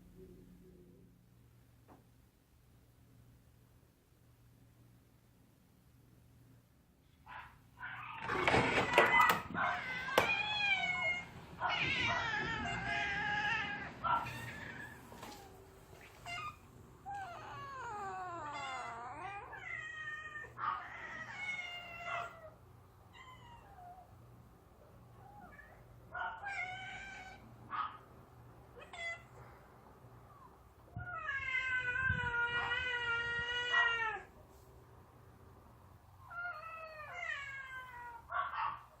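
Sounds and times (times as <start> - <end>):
cats meowing: 7.8 - 24.2, 25.1 - 27.5, 28.8 - 29.4, 30.4 - 34.3, 36.2 - 38.4.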